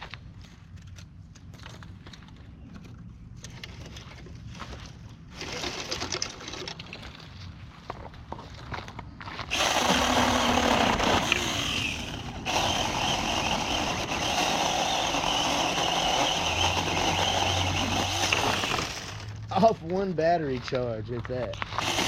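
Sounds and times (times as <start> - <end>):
electric chainsaw cutting wood: 9.5 - 19.4, 21.7 - 22.0.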